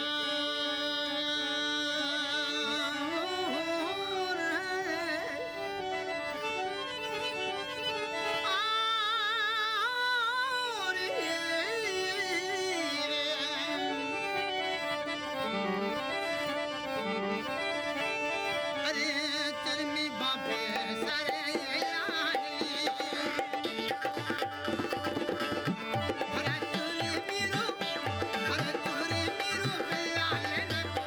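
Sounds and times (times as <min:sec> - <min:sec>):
harmonium drone: 0:00.0 - 0:31.0
person singing with vibrato: 0:18.2 - 0:31.0.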